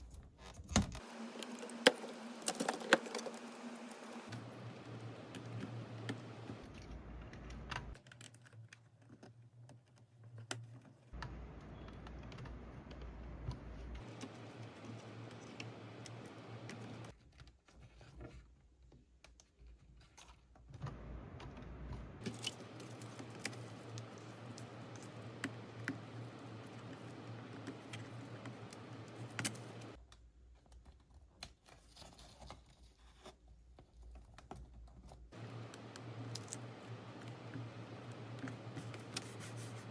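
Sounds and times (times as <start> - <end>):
low electrical hum: 0.0 - 8.0, 11.2 - 17.1, 20.8 - 30.0, 35.3 - 39.9
small parts and tools clicking: 0.1 - 17.8.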